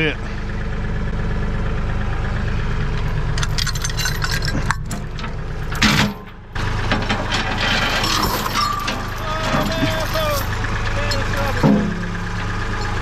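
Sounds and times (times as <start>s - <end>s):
tractor engine running: 0.0s - 13.0s
loader bucket rattling: 2.8s - 13.0s
sharp metal clank: 3.3s - 6.4s, 11.4s - 12.1s.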